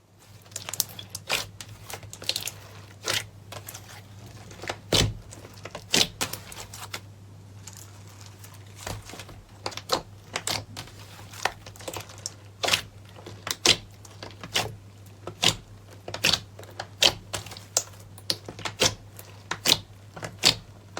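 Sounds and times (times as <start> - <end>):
slime clicking and popping: 11.7 - 20.7.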